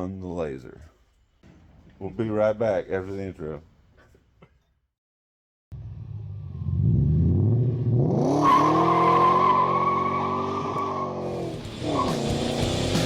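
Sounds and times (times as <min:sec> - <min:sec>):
car engine revving: 0:05.8 - 0:13.0.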